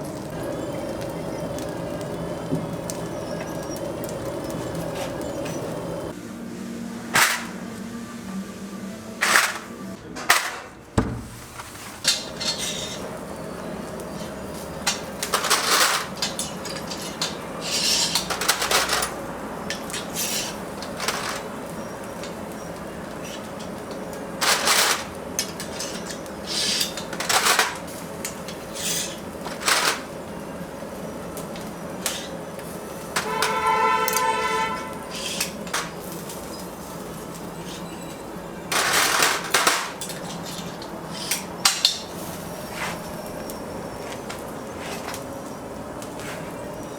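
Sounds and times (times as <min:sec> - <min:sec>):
background hum: 0:00.0 - 0:06.2
utensils and dishes clinking: 0:00.0 - 0:06.2, 0:07.1 - 0:07.8, 0:09.2 - 0:46.9.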